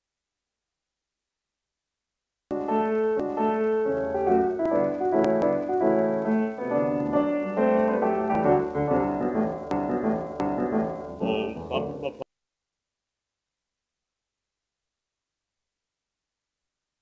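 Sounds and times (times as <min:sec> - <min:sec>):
record surface clicks: 0:02.5 - 0:11.8
old record instrumental music: 0:02.5 - 0:12.2.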